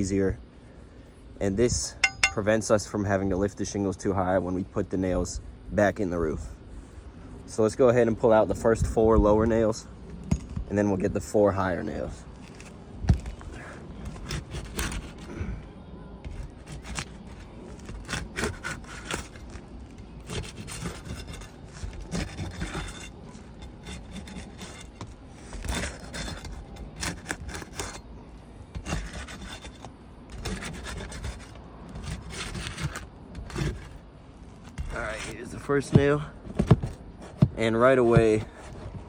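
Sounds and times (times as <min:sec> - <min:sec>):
metal bar scraping under shingles: 0:02.0 - 0:02.6, 0:14.0 - 0:15.3, 0:16.3 - 0:28.1, 0:28.7 - 0:39.0.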